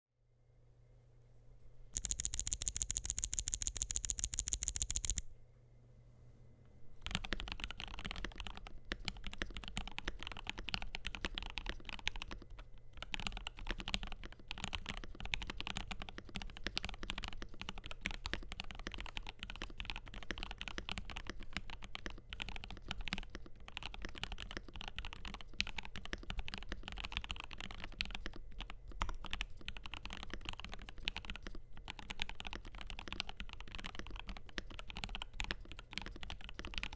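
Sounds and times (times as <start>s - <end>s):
mechanical keyboard typing: 2.0s - 5.2s, 7.0s - 36.9s
fast run of sharp clicks: 2.0s - 5.3s.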